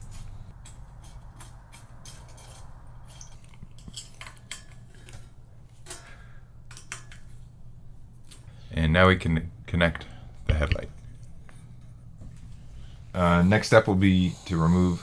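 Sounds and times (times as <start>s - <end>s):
metallic clinks of hand tools: 0.0s - 7.4s
steady low hum: 0.0s - 15.0s.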